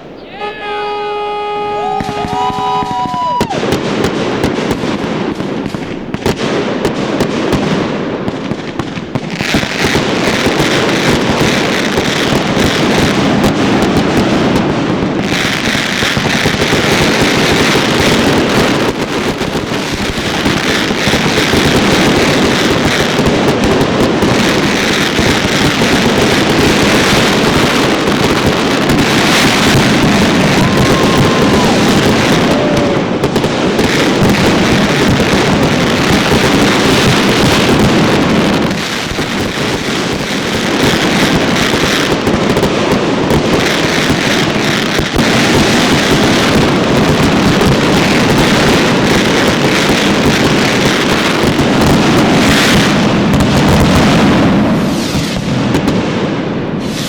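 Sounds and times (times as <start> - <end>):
firework whistle: 0.0 - 4.3, 24.8 - 37.9, 56.8 - 57.0
fireworks bursting and crackling: 0.0 - 57.0.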